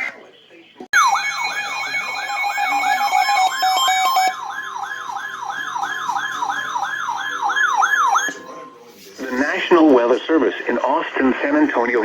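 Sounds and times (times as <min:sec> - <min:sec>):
electronic siren whooping: 0:01.0 - 0:08.8
steady alarm tones: 0:01.0 - 0:09.1.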